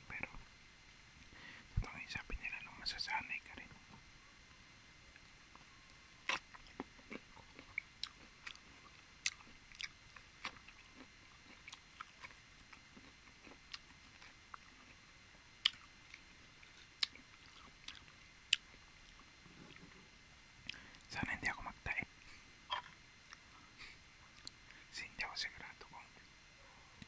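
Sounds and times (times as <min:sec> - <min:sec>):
person chewing: 0:06.2 - 0:15.0, 0:15.6 - 0:19.9.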